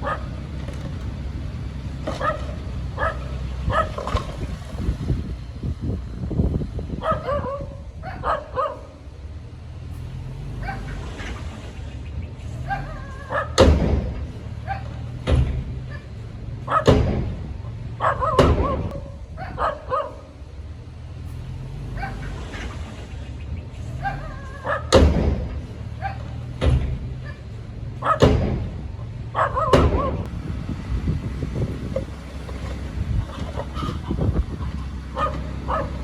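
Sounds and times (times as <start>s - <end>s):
diesel engine droning: 0.0s - 36.0s
loud short sharp bangs: 12.8s - 19.2s, 24.2s - 30.3s.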